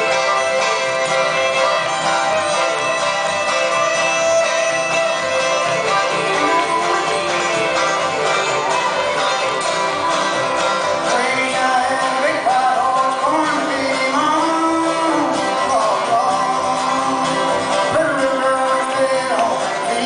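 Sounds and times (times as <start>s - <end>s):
banjo frailing rhythm: 0.0s - 20.0s
man singing: 10.8s - 20.0s.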